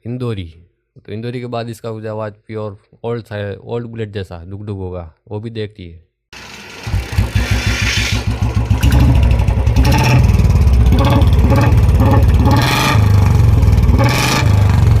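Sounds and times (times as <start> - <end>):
motorcycle engine revving: 6.4 - 15.0.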